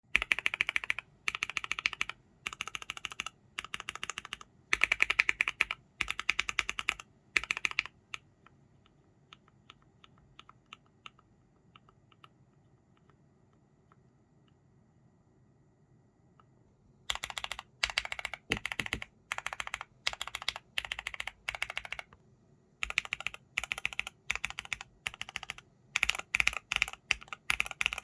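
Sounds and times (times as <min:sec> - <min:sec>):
mechanical keyboard typing: 0:00.1 - 0:08.3, 0:09.2 - 0:13.2, 0:17.1 - 0:22.2, 0:22.8 - 0:28.0.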